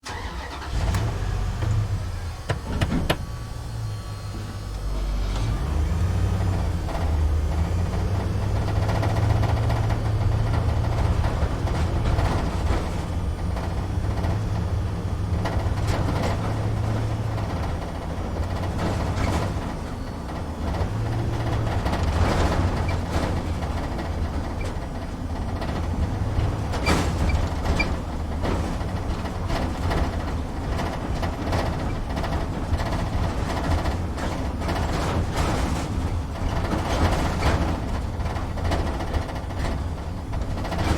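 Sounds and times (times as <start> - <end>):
truck engine rumbling: 0.0 - 40.9
cab rattling and clicking: 6.3 - 40.9.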